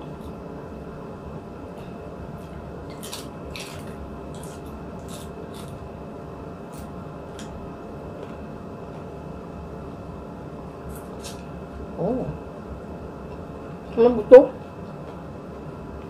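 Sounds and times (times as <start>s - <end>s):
steady background hum: 0.0s - 16.0s
person chewing food: 1.8s - 5.9s.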